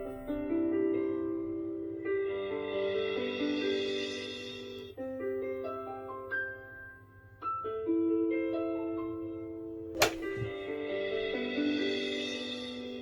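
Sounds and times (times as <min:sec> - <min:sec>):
sharp click: 0:10.0 - 0:10.6.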